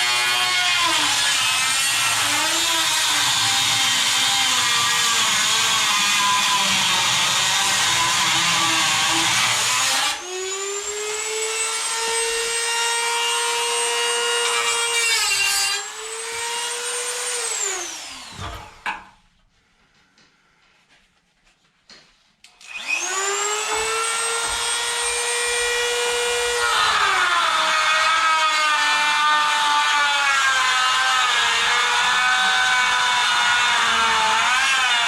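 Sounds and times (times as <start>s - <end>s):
electric grinder cutting steel: 0.0s - 18.9s, 22.5s - 35.0s.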